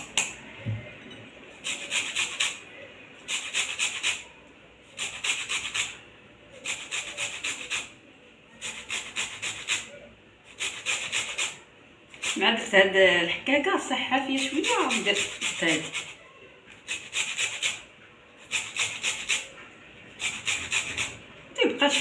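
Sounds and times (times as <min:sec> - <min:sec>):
grater scraping strokes: 0:01.5 - 0:02.6, 0:03.2 - 0:04.3, 0:04.9 - 0:06.0, 0:06.6 - 0:07.9, 0:08.6 - 0:09.9, 0:10.5 - 0:12.4, 0:14.3 - 0:22.0.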